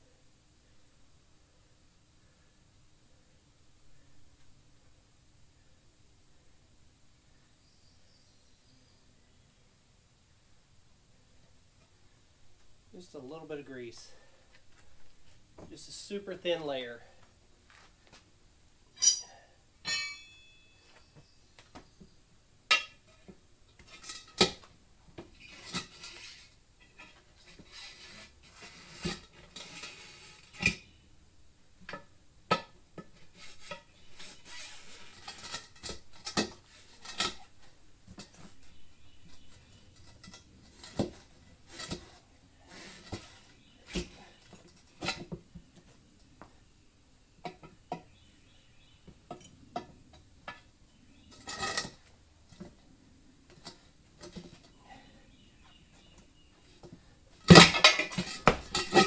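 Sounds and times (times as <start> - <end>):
tools clanking against wheel rim: 19.0 - 20.6, 22.7 - 28.0, 57.5 - 59.0.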